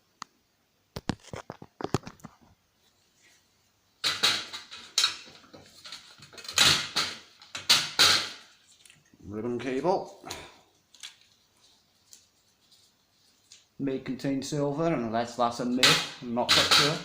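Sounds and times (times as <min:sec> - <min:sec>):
plastic and metal parts scraping: 0:04.0 - 0:09.0, 0:15.8 - 0:17.0.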